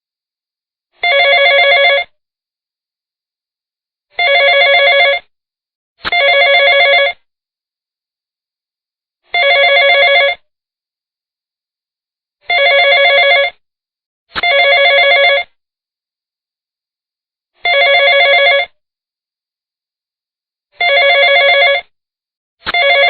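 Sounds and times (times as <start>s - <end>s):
trilling phone ringtone: 1.0s - 2.1s, 4.2s - 5.2s, 6.1s - 7.2s, 9.3s - 10.4s, 12.5s - 13.6s, 14.4s - 15.5s, 17.6s - 18.8s, 20.8s - 21.9s, 22.7s - 23.0s.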